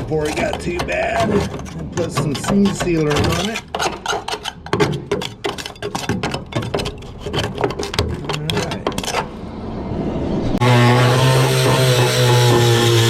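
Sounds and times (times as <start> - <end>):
hand scraping sheet metal: 0.0 - 9.4.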